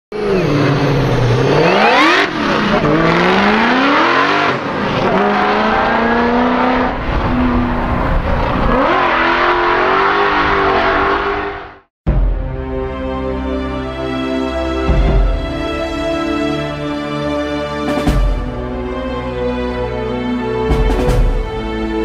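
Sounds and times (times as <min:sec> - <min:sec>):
car engine revving: 0:00.2 - 0:11.8.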